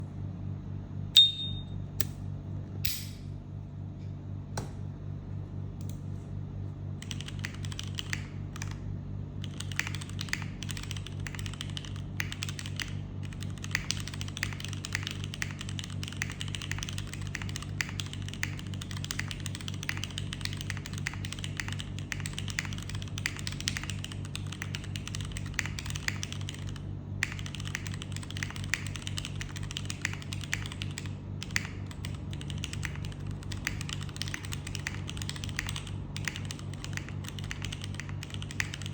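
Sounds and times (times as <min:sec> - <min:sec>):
steady low hum: 0:00.0 - 0:38.9
mechanical keyboard typing: 0:07.0 - 0:08.8, 0:09.4 - 0:38.9.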